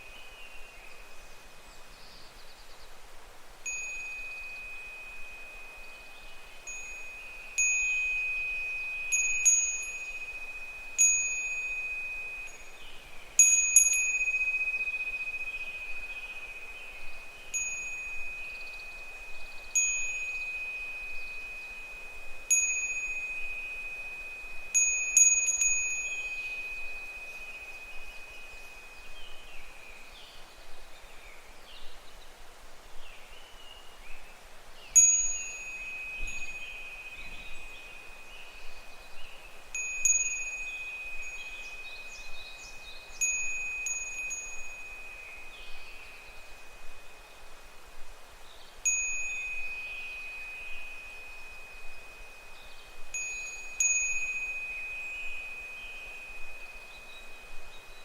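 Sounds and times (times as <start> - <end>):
wind bell ringing: 3.6 - 30.3, 35.0 - 58.0.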